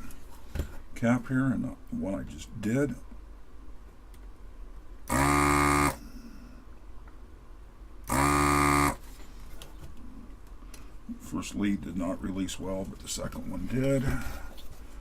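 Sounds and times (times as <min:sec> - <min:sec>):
desoldering vacuum pump buzzing: 0:05.0 - 0:06.0, 0:08.0 - 0:09.0.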